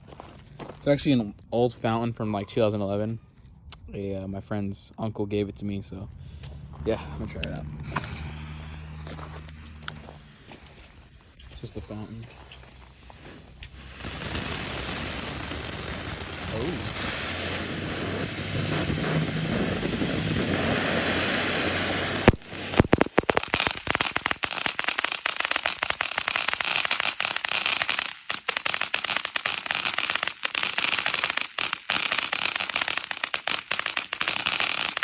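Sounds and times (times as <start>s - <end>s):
firework fountain hissing and crackling: 7.4s - 35.0s
sharp pop: 22.2s - 24.4s.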